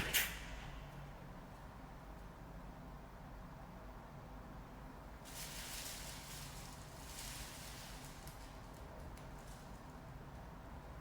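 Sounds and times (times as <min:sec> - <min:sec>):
faint hiss: 0:05.2 - 0:10.0.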